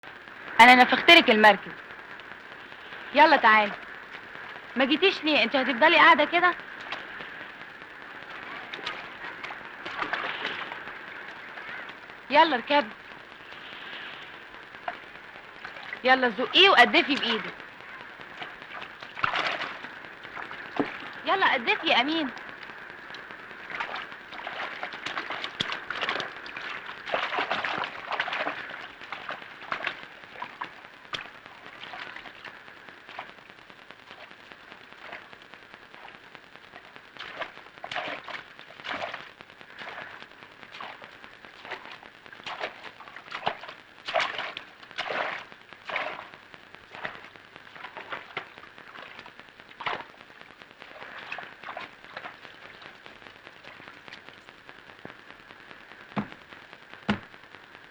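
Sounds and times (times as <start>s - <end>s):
steady hiss: 0.0s - 57.9s
hands paddling water splashing: 8.2s - 12.5s, 14.8s - 22.4s, 23.0s - 32.5s, 37.2s - 46.3s, 46.9s - 50.1s.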